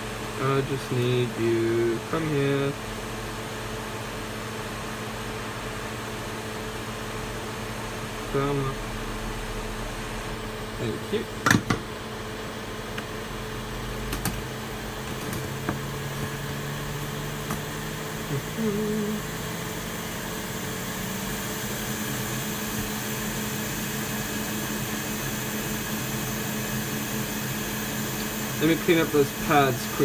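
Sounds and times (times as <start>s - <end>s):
hot-air station whooshing hiss: 10.8s - 11.4s, 13.8s - 30.0s.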